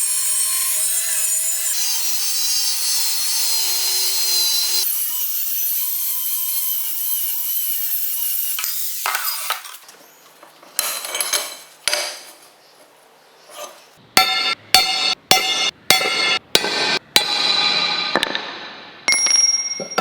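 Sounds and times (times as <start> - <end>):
power tool cutting steel: 0.0 - 9.8
metal clinking while handled: 10.8 - 12.5.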